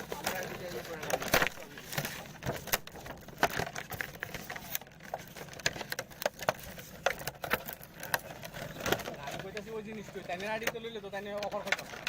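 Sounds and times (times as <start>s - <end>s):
packaging being torn open: 0.0s - 9.3s.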